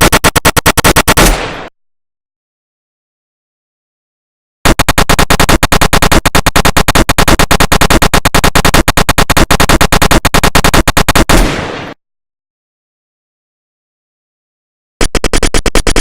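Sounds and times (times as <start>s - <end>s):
automatic gunfire: 0.0s - 1.7s, 4.7s - 12.0s.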